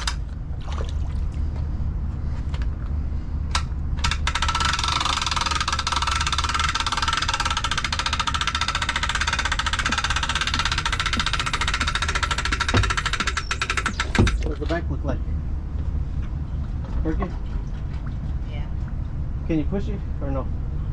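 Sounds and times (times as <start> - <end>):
low engine hum: 0.0 - 20.9
sharp clicks: 3.5 - 14.6
fast mechanical rattle: 3.5 - 14.7.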